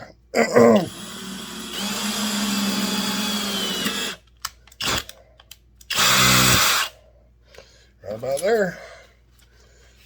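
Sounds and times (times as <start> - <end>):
electric drill drilling steel: 0.9 - 4.2, 5.9 - 6.9.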